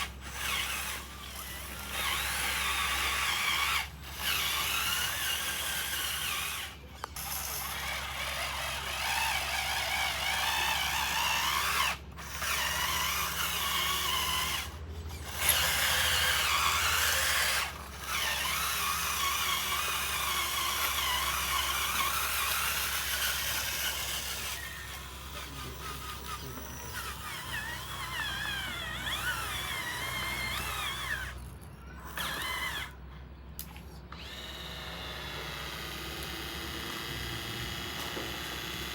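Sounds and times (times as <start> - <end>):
small electric motors whining: 0.0 - 38.9.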